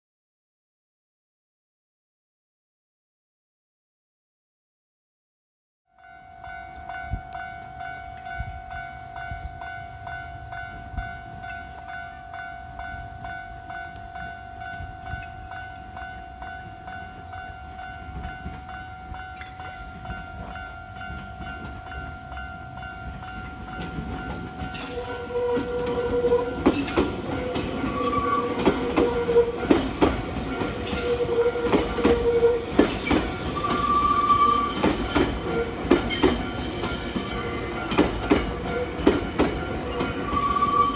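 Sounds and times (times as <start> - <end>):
level-crossing warning bell: 5.9 - 40.9
train wheels clicking over rail joints: 22.9 - 40.9.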